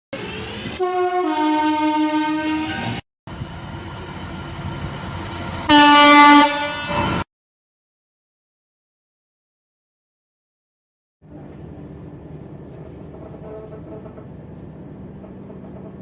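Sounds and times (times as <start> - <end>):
train rumbling: 0.1 - 7.2, 11.2 - 16.0
two-tone train horn: 0.7 - 3.0, 5.6 - 7.2.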